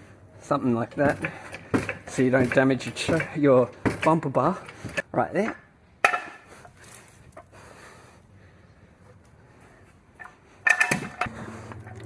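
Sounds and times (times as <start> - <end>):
metallic clanks of jacking gear: 0.9 - 5.0, 10.2 - 12.0.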